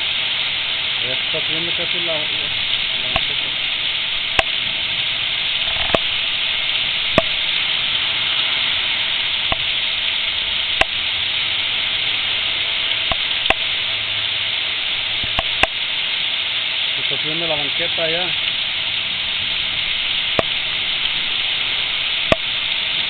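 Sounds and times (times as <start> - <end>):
heavy rain: 0.0 - 23.0
sharp taps: 3.1 - 3.3, 9.5 - 9.7, 20.4 - 20.6.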